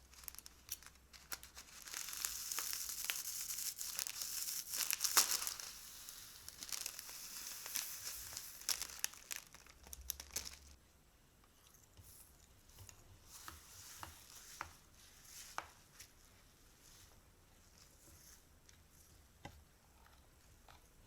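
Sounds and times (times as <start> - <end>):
crunchy slime crackling: 0.0 - 10.8.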